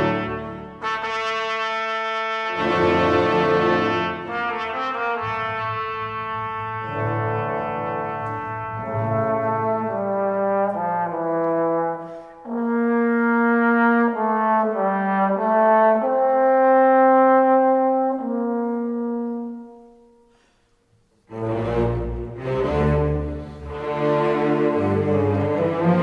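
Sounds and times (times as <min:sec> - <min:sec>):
slow brass chords: 0:00.0 - 0:20.4.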